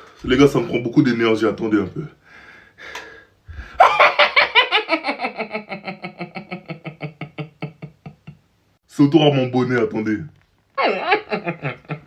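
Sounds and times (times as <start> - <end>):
person breathing: 2.2 - 3.8
person laughing rapidly: 3.8 - 8.4, 10.8 - 12.0.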